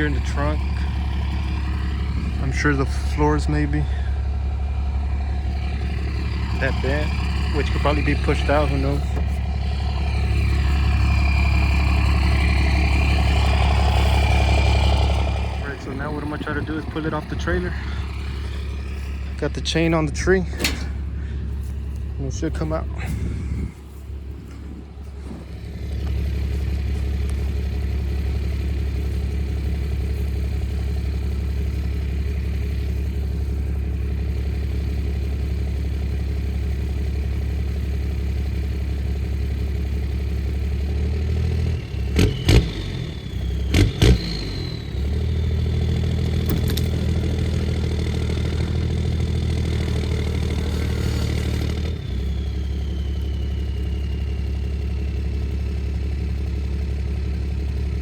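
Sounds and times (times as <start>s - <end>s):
truck engine running: 0.0s - 58.0s
sharp metal clanks: 20.5s - 21.1s.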